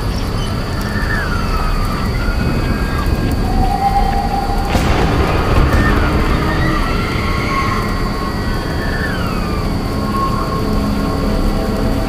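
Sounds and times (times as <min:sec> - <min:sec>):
low rumble: 0:04.5 - 0:10.0
high wailing tones sliding down: 0:04.5 - 0:10.1.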